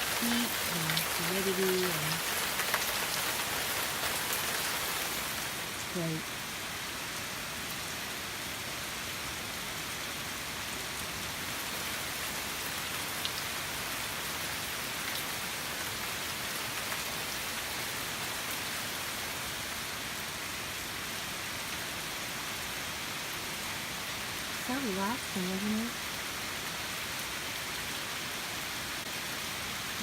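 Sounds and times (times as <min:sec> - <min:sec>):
heavy rain pouring: 0:00.0 - 0:30.0
drips and patters: 0:00.1 - 0:03.3.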